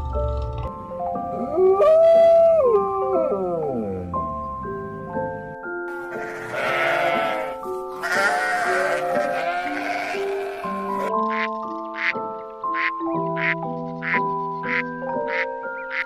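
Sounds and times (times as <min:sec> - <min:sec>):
background music of held notes: 0:00.0 - 0:16.0
animal bleating: 0:05.9 - 0:11.1.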